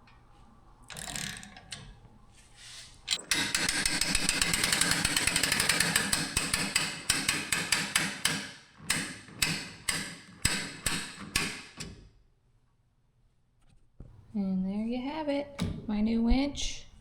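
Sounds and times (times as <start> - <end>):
rapid metallic clicking: 3.2 - 11.5.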